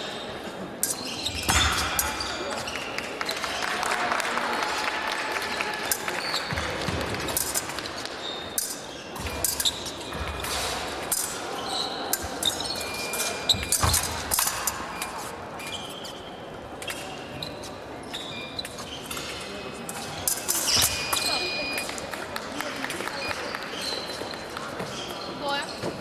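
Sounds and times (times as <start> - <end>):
shoes thudding and squeaking: 0.8 - 2.9, 7.9 - 19.4, 20.4 - 21.5, 23.8 - 26.0.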